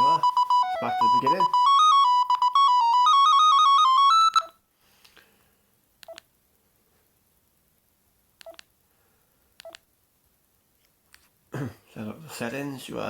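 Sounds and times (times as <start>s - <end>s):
electronic ringtone melody: 0.0s - 4.6s
phone keypad tones: 0.0s - 4.6s.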